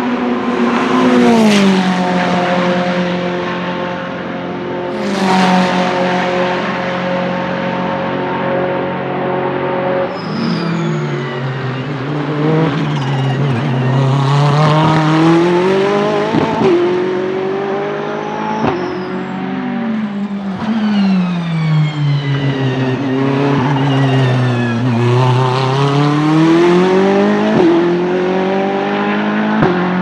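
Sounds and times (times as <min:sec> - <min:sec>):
race car engine revving: 0:00.0 - 0:30.0
gear changes: 0:10.1 - 0:17.0, 0:18.6 - 0:27.8.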